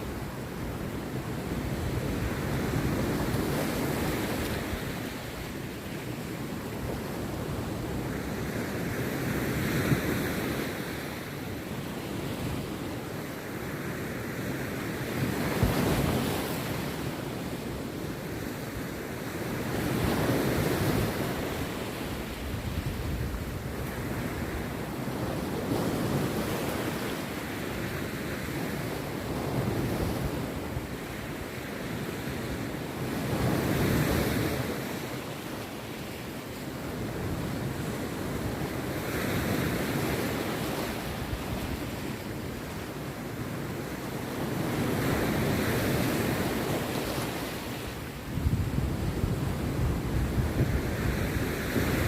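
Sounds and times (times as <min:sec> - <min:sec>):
sea waves breaking on beach: 0:00.0 - 0:52.0
wind rumbling on microphone: 0:17.7 - 0:27.0, 0:44.2 - 0:52.0.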